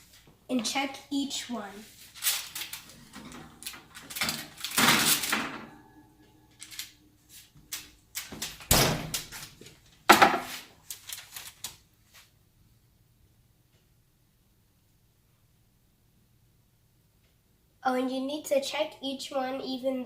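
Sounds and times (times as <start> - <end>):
baking pans and utensils clattering: 2.4 - 5.9.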